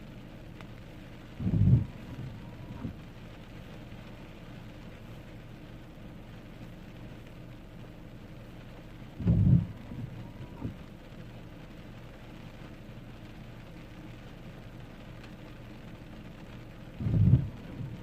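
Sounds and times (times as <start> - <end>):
loud low thump: 1.4 - 3.0, 9.2 - 10.8, 17.0 - 18.0
steady outdoor rushing noise: 1.4 - 3.0, 9.2 - 10.8, 17.0 - 18.0.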